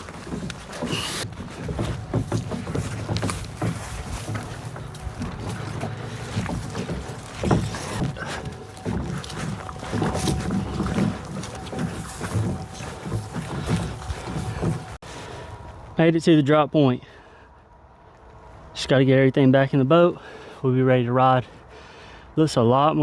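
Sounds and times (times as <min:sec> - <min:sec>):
kayak hull scraping over branches: 0:00.0 - 0:15.9
heavy handling rumble: 0:00.0 - 0:16.0.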